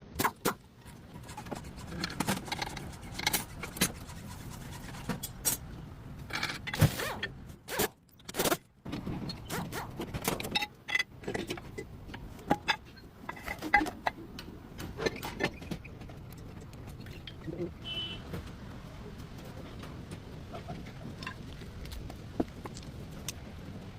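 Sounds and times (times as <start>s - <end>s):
metal tools clinking and scraping: 9.2s - 14.2s.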